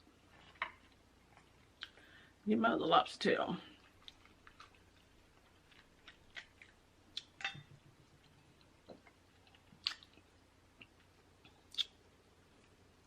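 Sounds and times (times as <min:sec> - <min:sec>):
chewing and mouth sounds: 0:03.7 - 0:07.4, 0:08.2 - 0:12.8
sharp mouth clicks: 0:11.7 - 0:12.0.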